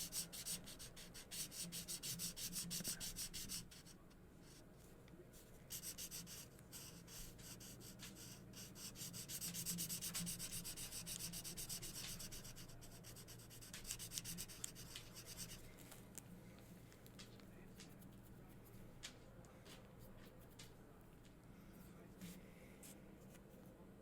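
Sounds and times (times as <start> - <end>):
markers scratching on paper: 0.0 - 4.0, 5.4 - 15.9.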